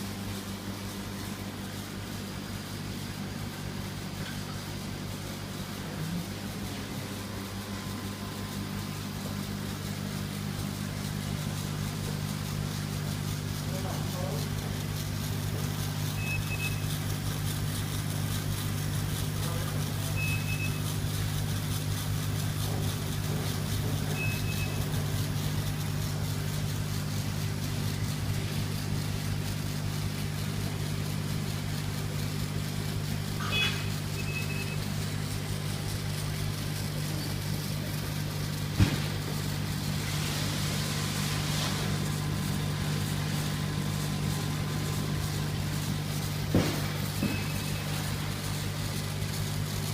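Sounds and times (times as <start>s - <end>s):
laser engraving machine humming: 0.0s - 49.9s
short high beeps: 16.2s - 16.9s, 20.2s - 20.8s, 24.2s - 24.8s, 33.4s - 34.8s, 47.2s - 47.9s.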